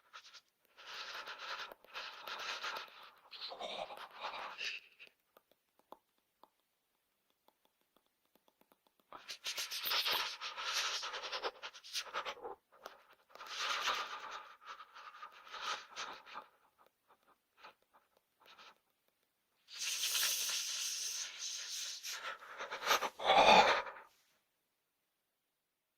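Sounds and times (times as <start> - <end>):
teeth chattering: 1.7 - 10.2
faint clicks: 4.7 - 9.5.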